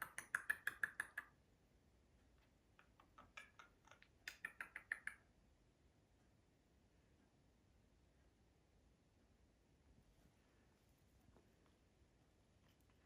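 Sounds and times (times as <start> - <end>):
parrot dry clicks: 0.0 - 1.3, 2.8 - 5.3.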